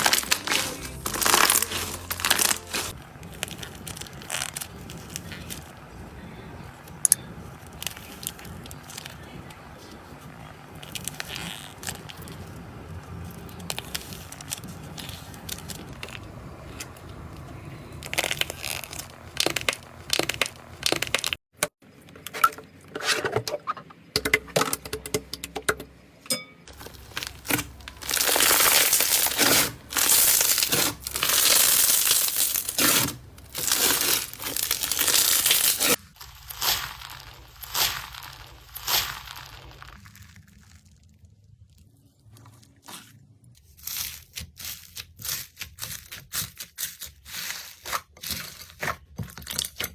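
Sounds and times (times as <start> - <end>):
slime crackling when squeezed: 0.0 - 5.7, 26.9 - 42.4
loud crunching bursts: 0.0 - 5.9, 26.8 - 40.3.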